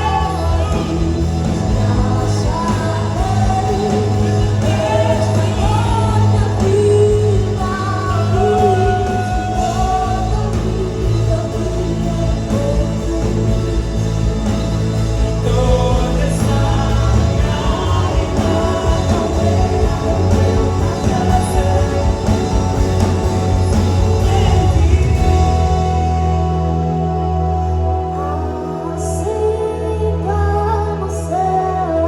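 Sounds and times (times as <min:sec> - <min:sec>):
gospel band with singing: 0:00.0 - 0:32.0.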